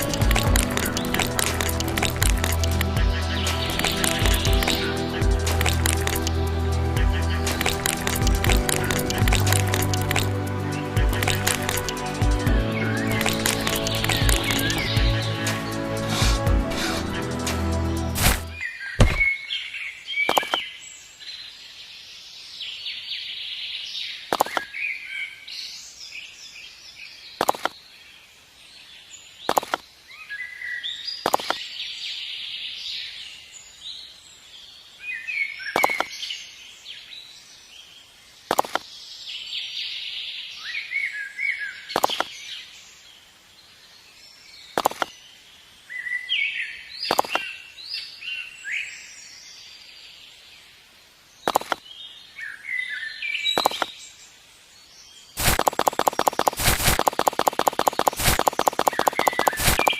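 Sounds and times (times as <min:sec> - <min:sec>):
birds chirping: 0:00.0 - 0:19.5, 0:35.6 - 0:36.4, 0:51.4 - 0:54.4, 0:55.1 - 0:59.9
sharp knocks: 0:19.0 - 0:19.3.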